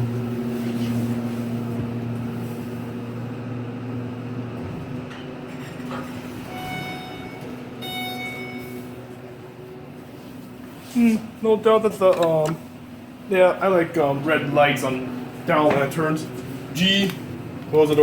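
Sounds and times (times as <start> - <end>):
elevator pump motor humming: 0.0 - 18.0
elevator arrival chime: 6.4 - 9.2.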